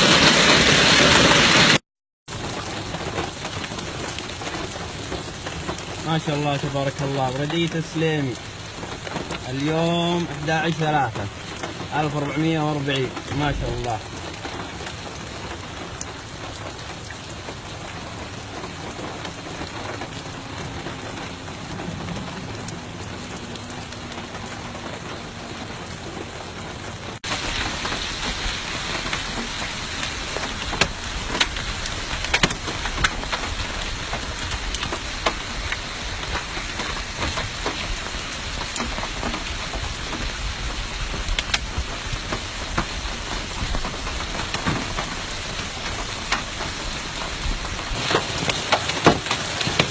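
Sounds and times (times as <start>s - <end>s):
hailstones striking: 0.0s - 22.0s, 27.2s - 49.9s
heavy rain falling: 0.0s - 49.9s.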